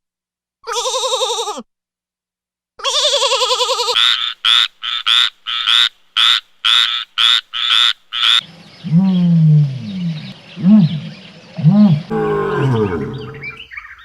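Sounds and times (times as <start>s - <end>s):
wavering bleat: 0.6s - 1.6s, 2.8s - 4.0s, 11.6s - 13.6s
frog croaking: 4.0s - 13.8s
low falling growl: 8.4s - 13.7s.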